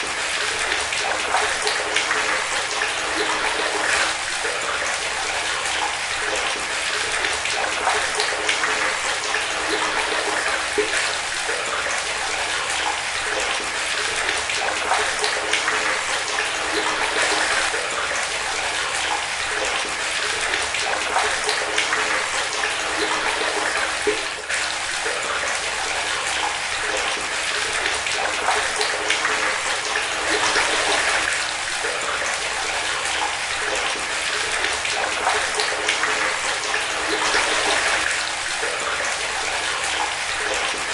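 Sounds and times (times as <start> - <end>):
tap water splashing: 0.0 - 40.9.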